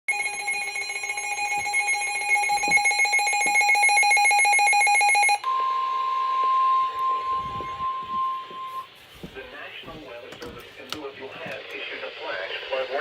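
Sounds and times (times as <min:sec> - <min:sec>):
pulsing multi-tone alarm: 0:00.1 - 0:08.9.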